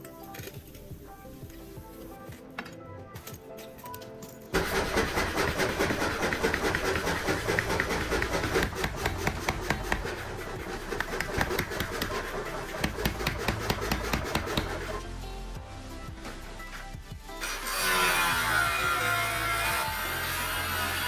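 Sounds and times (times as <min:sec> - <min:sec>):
power tool rasping: 0:04.6 - 0:15.2, 0:17.4 - 0:21.0.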